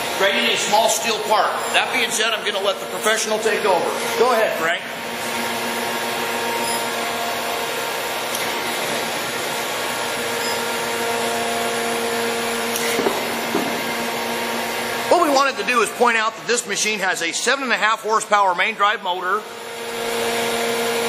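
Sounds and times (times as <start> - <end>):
grinding wheel hissing on steel: 0.0 - 16.2
machine humming drone: 0.0 - 17.7.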